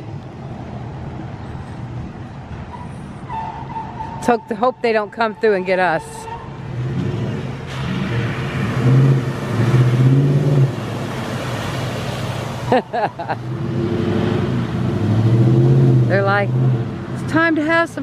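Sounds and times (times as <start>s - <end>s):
rushing water: 0.0s - 18.0s
truck engine revving: 6.2s - 17.4s.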